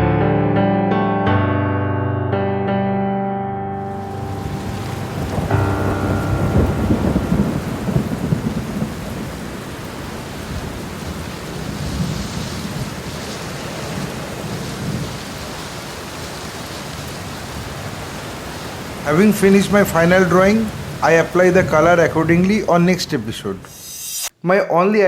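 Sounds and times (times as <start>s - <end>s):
steady rain falling: 3.8s - 23.7s
low rumble of thunder: 3.9s - 15.4s.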